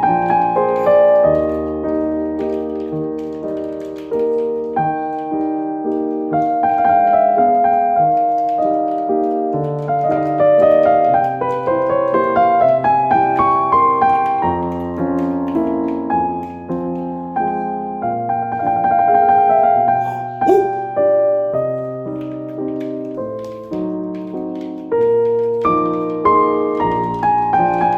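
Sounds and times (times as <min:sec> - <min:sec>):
piano music: 0:00.0 - 0:14.1.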